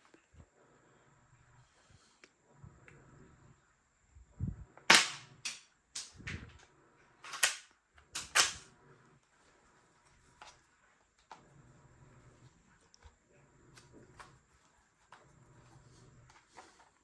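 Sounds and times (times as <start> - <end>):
toy pistol snaps: 4.9 - 6.2, 7.3 - 8.6.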